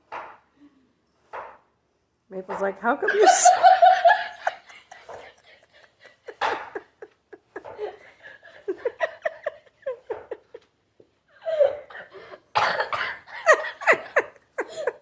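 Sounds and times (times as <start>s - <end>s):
person coughing: 11.7s - 13.3s.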